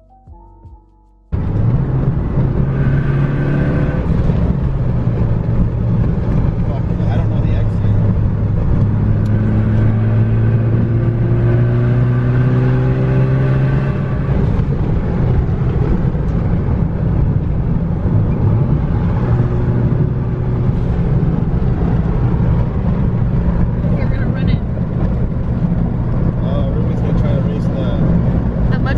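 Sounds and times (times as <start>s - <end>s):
car engine droning under load: 1.3s - 28.9s
road or wind noise: 1.3s - 28.9s.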